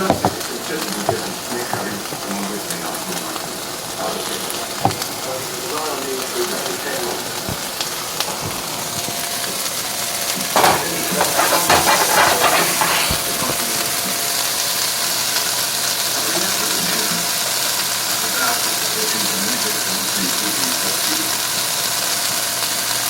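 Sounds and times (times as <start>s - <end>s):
clattering and knocking: 0.0s - 2.3s, 4.5s - 5.3s, 7.1s - 9.5s, 10.6s - 13.5s
kitchen hiss: 0.0s - 23.0s.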